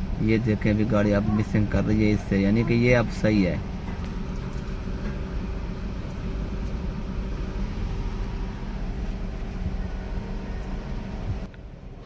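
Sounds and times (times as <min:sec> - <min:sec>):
car engine idling and misfiring: 0:00.0 - 0:12.0.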